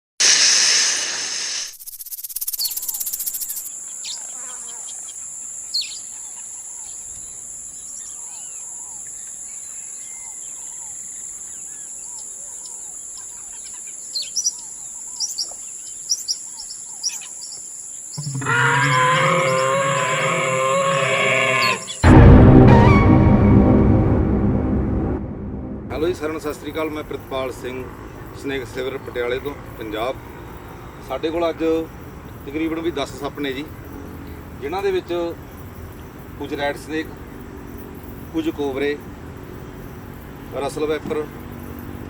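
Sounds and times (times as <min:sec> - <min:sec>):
brief hiss: 0:00.2 - 0:02.7
insect drone: 0:00.2 - 0:22.4, 0:25.9 - 0:42.0
bird chirps: 0:01.8 - 0:22.0
music: 0:22.0 - 0:26.5.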